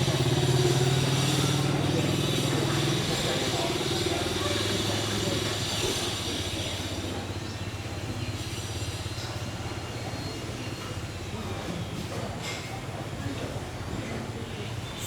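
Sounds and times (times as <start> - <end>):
vehicle engine humming: 0.0 - 7.4.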